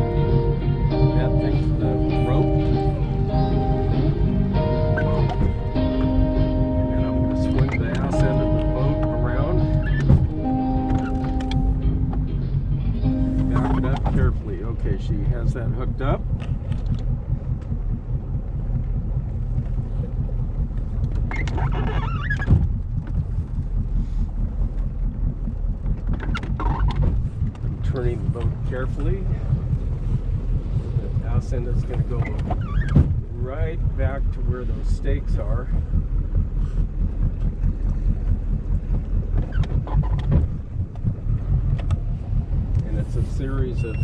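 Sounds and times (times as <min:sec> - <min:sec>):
boat engine low rumble: 0:00.0 - 0:44.0
wind buffeting microphone: 0:00.0 - 0:44.0
person speaking: 0:06.8 - 0:10.5, 0:13.1 - 0:16.2.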